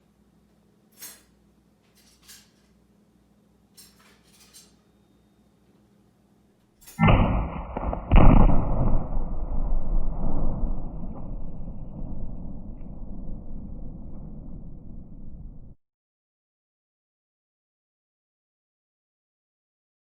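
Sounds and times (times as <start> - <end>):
sharp crack: 6.8 - 15.8
explosion with rumbling roar: 7.0 - 15.8.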